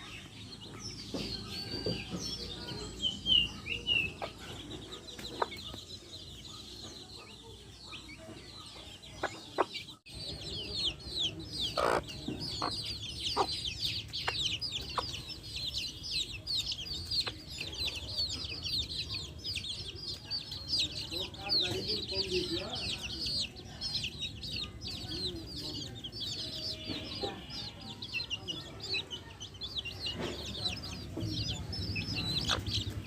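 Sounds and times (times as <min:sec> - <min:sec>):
chicks peeping: 0:00.0 - 0:33.0
hen clucking: 0:01.2 - 0:05.9, 0:09.1 - 0:10.0, 0:10.6 - 0:15.8, 0:29.8 - 0:33.0.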